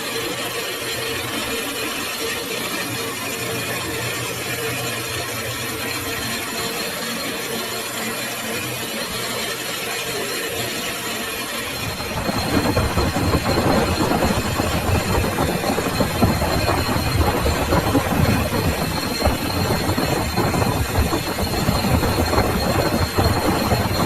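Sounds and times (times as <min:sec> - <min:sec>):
metal lathe humming: 0:11.3 - 0:24.0.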